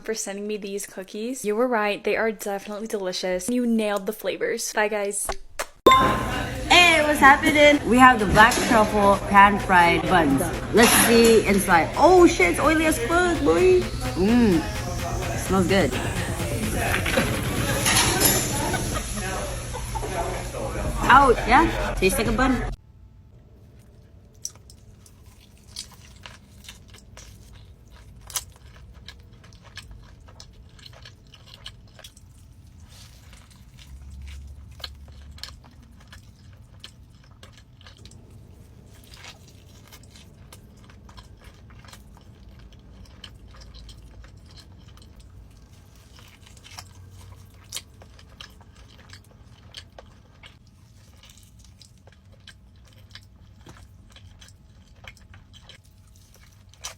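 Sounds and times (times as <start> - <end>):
crunchy chewing: 23.7 - 56.9.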